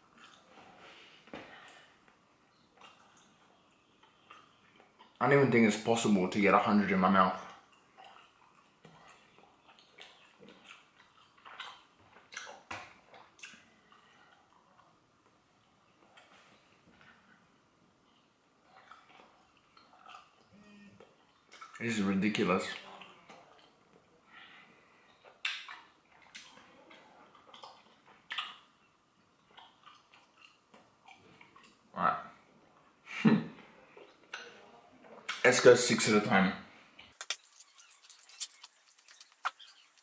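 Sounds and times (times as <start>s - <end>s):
mouth chewing gum wetly: 2.7s - 5.2s, 7.4s - 14.9s, 18.0s - 21.8s, 25.1s - 31.8s, 37.1s - 40.0s
mouth chewing gum: 7.4s - 14.9s, 37.1s - 40.0s.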